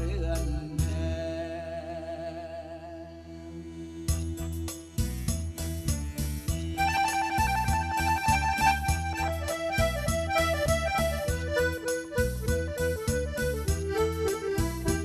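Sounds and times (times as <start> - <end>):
bass: 0.0 - 15.0
reedy accordion-like lead melody: 0.0 - 15.0
steady drum beat: 4.2 - 15.0.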